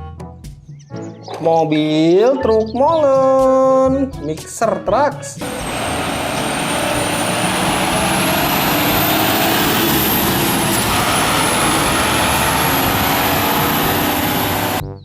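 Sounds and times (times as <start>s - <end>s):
truck engine running: 5.4s - 14.8s.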